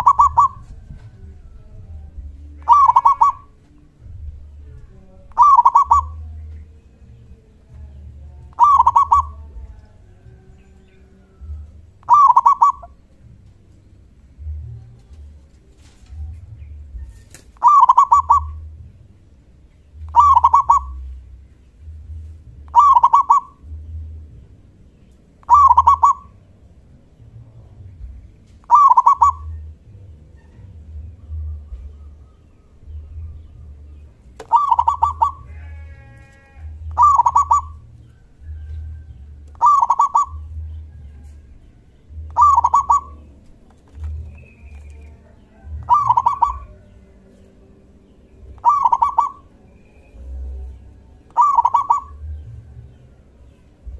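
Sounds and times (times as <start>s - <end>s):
dove cooing call: 0.0s - 4.6s, 5.2s - 6.6s, 8.5s - 9.8s, 10.8s - 13.4s, 15.8s - 18.8s, 20.0s - 21.3s, 22.7s - 23.8s, 25.4s - 26.4s, 28.6s - 47.5s, 48.2s - 53.9s.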